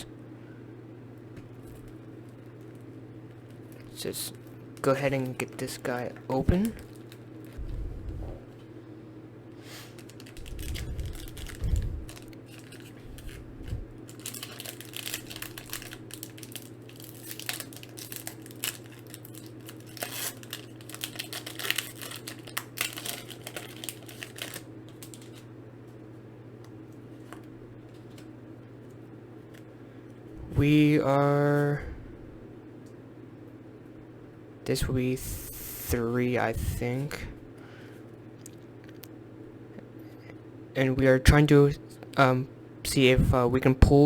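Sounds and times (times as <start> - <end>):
low steady hum: 0.0 - 44.0
plastic wrap crinkling and tearing: 6.6 - 7.6, 9.8 - 25.4
crackles and clicks: 9.9 - 25.5.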